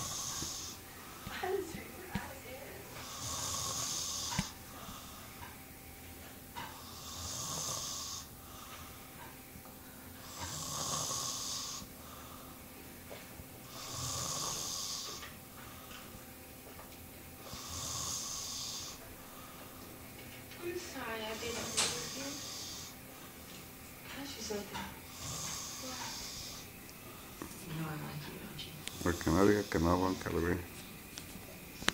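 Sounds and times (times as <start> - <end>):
person snoring: 0.0 - 0.8, 3.0 - 5.3, 6.8 - 8.3, 10.2 - 12.4, 13.6 - 15.2, 17.4 - 19.0, 22.0 - 23.0, 25.1 - 26.7, 28.8 - 30.4.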